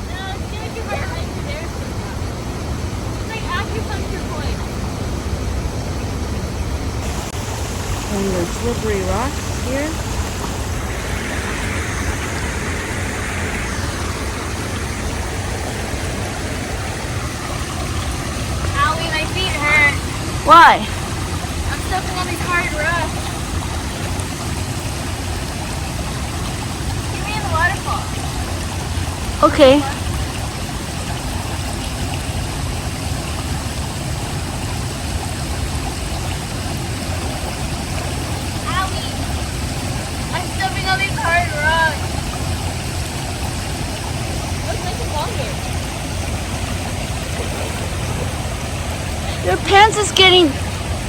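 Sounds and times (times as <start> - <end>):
river water and waterfall rushing: 0.0 - 51.0.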